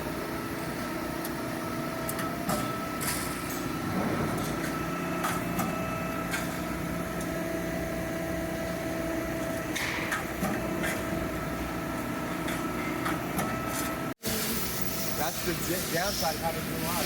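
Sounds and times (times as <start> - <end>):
machinery hum with whine: 0.0 - 17.0.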